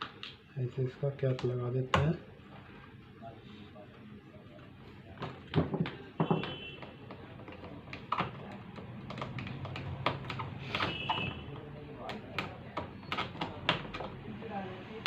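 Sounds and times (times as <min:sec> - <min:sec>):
small clicks and knocks of parts: 0:05.2 - 0:14.2.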